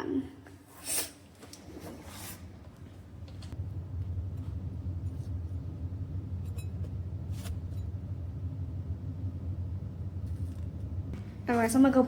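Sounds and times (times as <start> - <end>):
low hum: 2.8 - 12.0.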